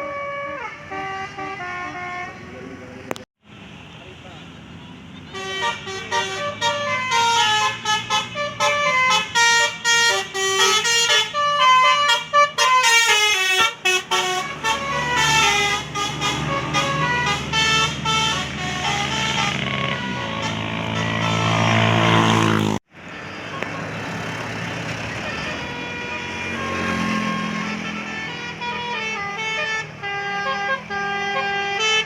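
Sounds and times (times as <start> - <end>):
musical air horn tune: 0.0 - 2.5, 5.3 - 22.4, 25.2 - 32.0
heavy bus engine: 0.0 - 32.0.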